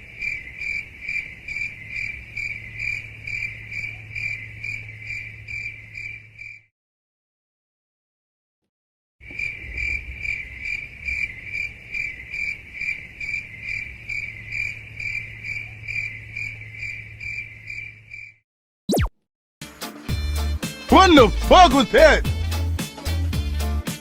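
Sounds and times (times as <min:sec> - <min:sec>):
crickets chirping: 0:00.0 - 0:06.7, 0:09.2 - 0:18.4.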